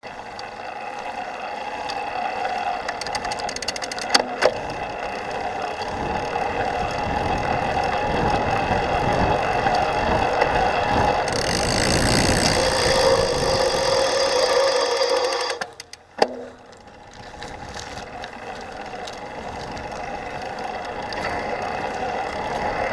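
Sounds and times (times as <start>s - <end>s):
e-bike motor chirping and chattering: 0.3s - 16.2s
ticks and sharp clicks: 14.4s - 16.4s.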